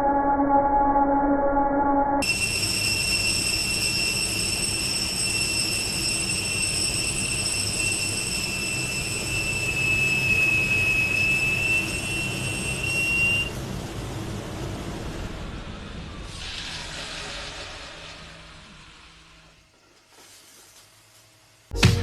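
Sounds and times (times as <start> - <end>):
lathe high-pitched whine: 2.2 - 14.2
rumbling machine noise: 2.2 - 19.6.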